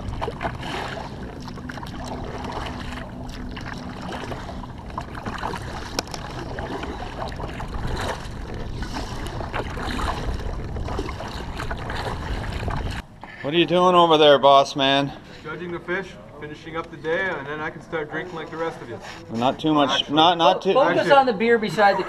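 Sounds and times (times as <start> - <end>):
wind buffeting microphone: 0.0 - 13.1
water lapping: 0.0 - 22.0.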